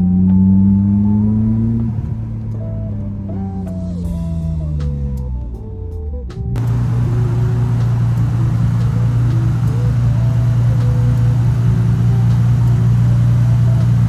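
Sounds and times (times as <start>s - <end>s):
car engine fast idle: 6.6s - 14.0s.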